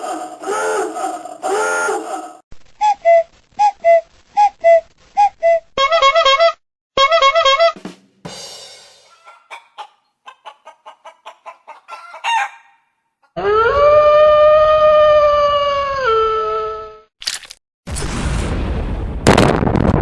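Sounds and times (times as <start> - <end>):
rooster-like call: 0.0 - 3.2, 9.1 - 16.8.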